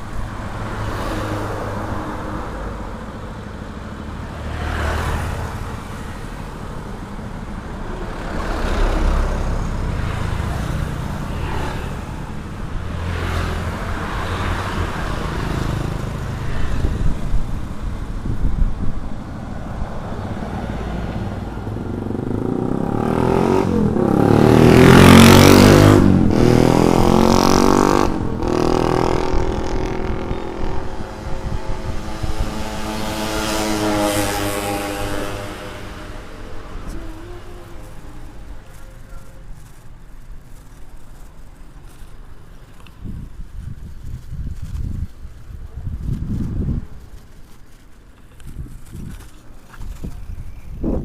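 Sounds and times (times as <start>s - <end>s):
loud vehicle passing: 0.0s - 39.8s
road traffic noise: 0.0s - 51.0s.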